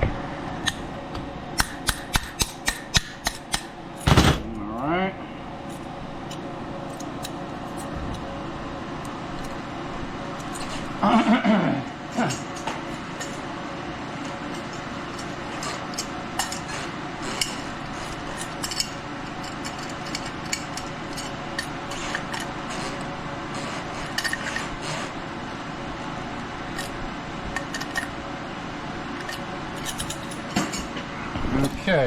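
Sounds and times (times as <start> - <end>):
steady background hum: 0.0 - 32.0
metal clicks and scrapes: 14.5 - 25.2.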